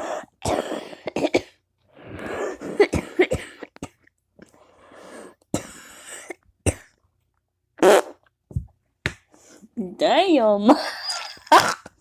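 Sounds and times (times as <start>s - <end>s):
person coughing: 0.0s - 1.6s, 2.6s - 4.0s.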